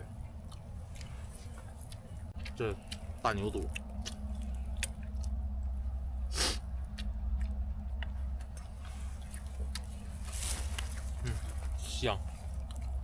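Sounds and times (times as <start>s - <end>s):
steady low rumble: 0.0s - 13.0s
person chewing food: 0.4s - 13.0s
short hiss: 6.3s - 6.6s.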